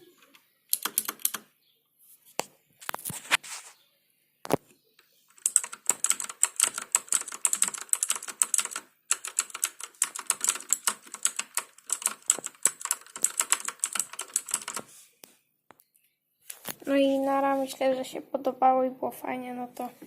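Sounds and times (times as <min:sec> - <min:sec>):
clicky mechanical keyboard typing: 0:00.7 - 0:01.4, 0:05.3 - 0:14.9.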